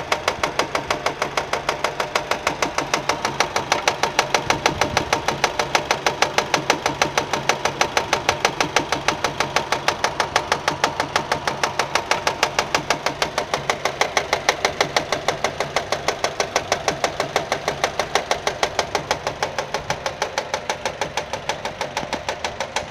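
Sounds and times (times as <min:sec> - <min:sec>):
car engine running: 0:00.0 - 0:22.9
rapid knocking: 0:00.1 - 0:22.9.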